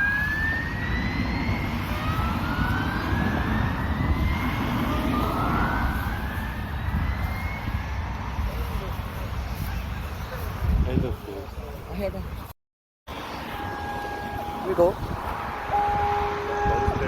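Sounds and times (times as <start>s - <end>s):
warning sirens whooping: 0.0s - 9.4s, 13.1s - 17.0s.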